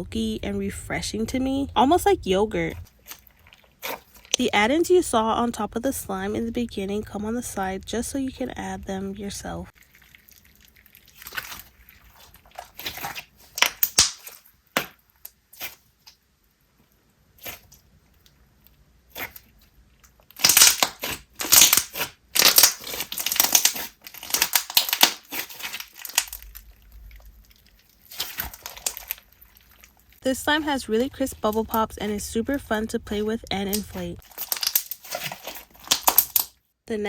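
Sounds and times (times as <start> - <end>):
slime popping and crunching: 9.8 - 16.2, 19.1 - 30.2, 33.6 - 36.6.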